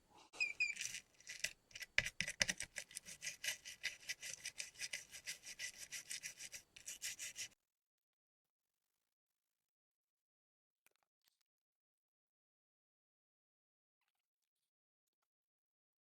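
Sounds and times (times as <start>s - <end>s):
brush scrubbing circuit board: 0.4s - 7.6s.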